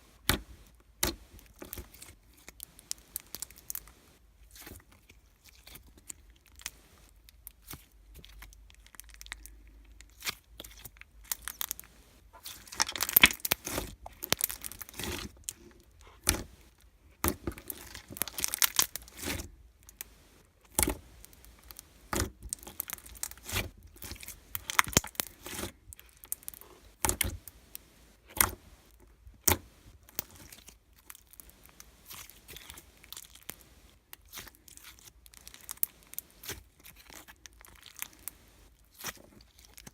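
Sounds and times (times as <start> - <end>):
crinkling and tearing: 7.4 - 27.6, 28.3 - 39.9.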